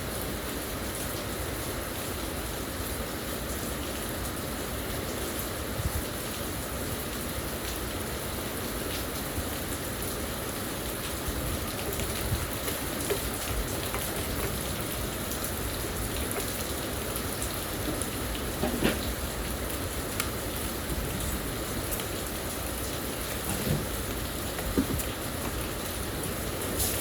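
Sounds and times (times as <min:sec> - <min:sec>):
rain hissing: 0:05.5 - 0:27.0.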